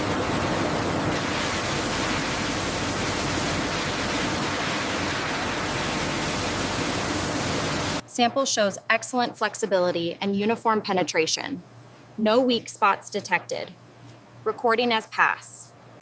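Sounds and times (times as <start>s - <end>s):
steady rushing noise: 0.0s - 8.0s.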